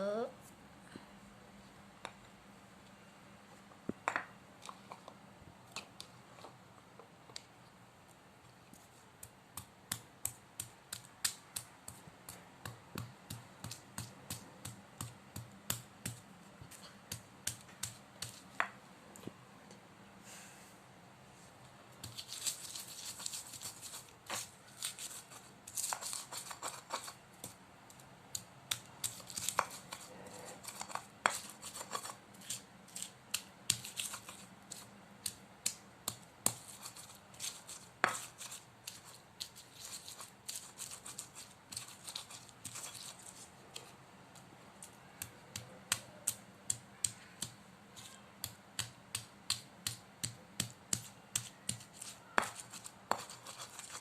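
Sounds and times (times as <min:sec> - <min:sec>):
pestle grinding in mortar: 0:45.5 - 0:54.0.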